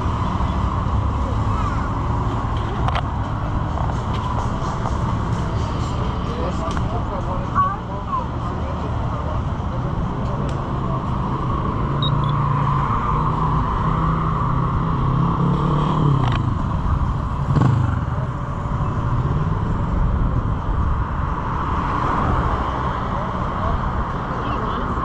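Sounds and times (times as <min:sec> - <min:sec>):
vehicle engine passing by: 0:12.4 - 0:19.6.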